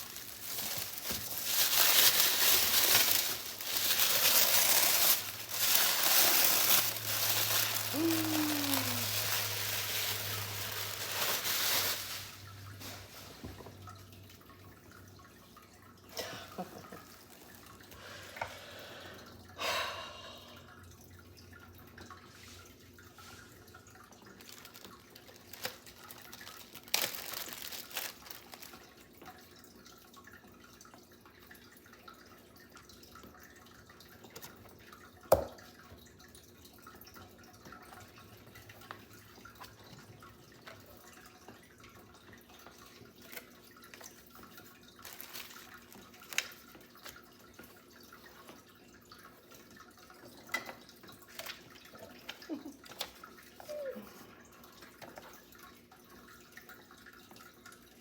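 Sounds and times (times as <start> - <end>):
items being handled: 0.0 - 13.8, 24.2 - 29.0, 45.0 - 48.6.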